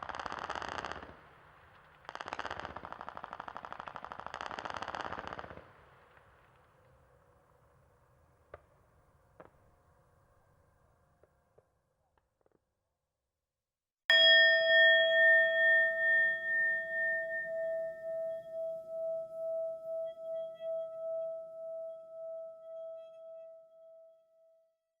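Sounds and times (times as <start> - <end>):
struck metal bell tone: 14.1 - 23.9.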